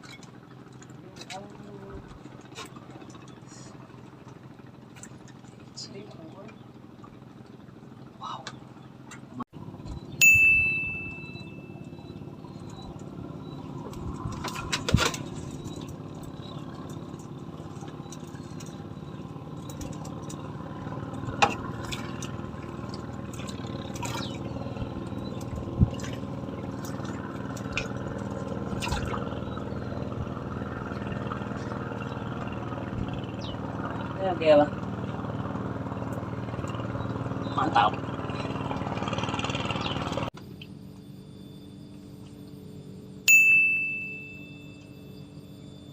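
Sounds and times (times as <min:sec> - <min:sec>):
engine hum: 0:00.0 - 0:45.9
bright ding: 0:10.2 - 0:12.0, 0:43.3 - 0:45.3.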